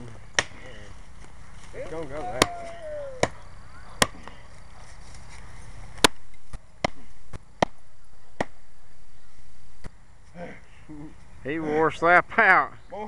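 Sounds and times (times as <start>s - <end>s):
tomahawk chopping tree trunk: 0.3s - 0.6s, 2.2s - 3.4s, 4.0s - 4.4s, 6.0s - 7.8s, 8.4s - 8.6s.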